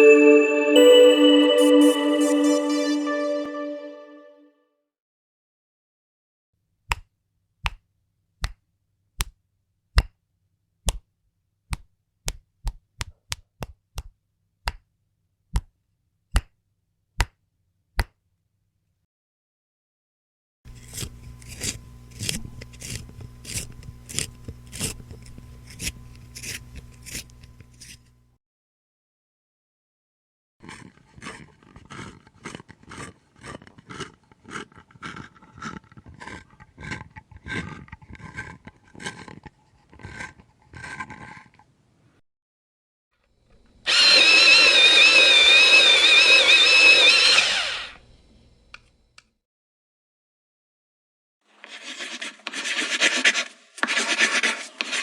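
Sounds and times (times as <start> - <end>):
electric pencil sharpener whining: 20.7 - 28.0, 43.6 - 48.1
pencil being sharpened: 20.7 - 28.1, 30.6 - 41.7, 51.6 - 55.0.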